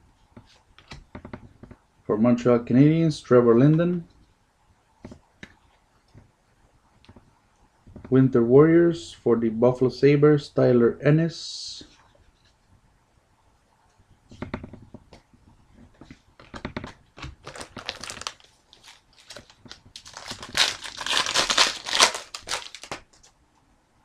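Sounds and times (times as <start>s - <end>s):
foil wrapper crinkling and tearing: 17.2s - 23.3s.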